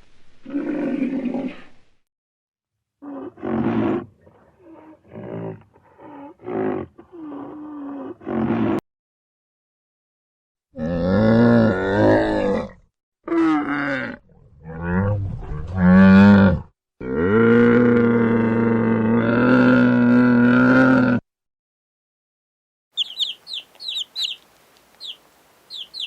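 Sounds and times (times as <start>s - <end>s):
large animal calling: 23.0s - 24.4s.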